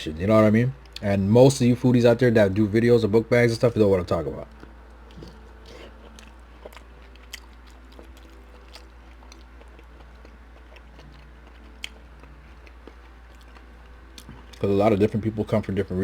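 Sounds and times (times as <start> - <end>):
person chewing food: 4.5 - 14.7.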